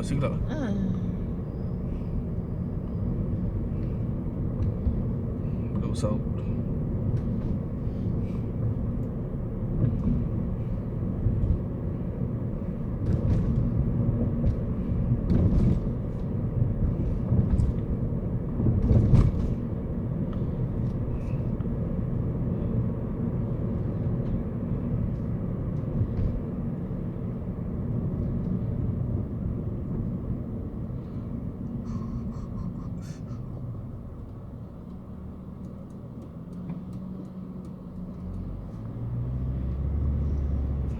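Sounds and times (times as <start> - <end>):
car engine and tyre rumble: 0.0 - 40.9.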